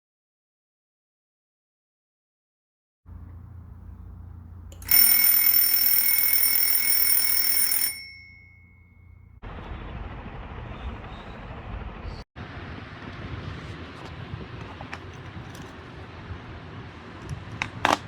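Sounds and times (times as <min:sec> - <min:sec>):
alarm clock bell ringing: 0:03.3 - 0:09.4.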